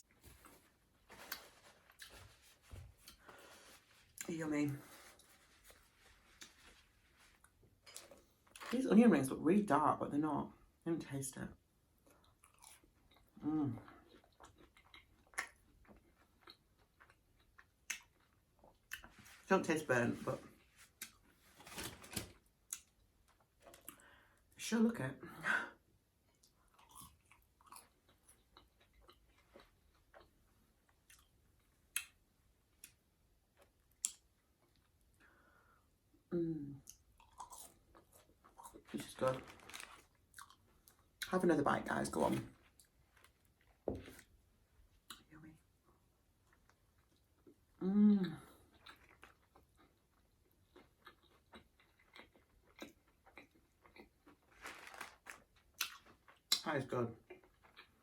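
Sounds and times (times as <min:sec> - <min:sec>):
chewing with wet mouth smacks: 0:14.0 - 0:19.2, 0:48.7 - 0:54.4, 0:55.7 - 0:56.7.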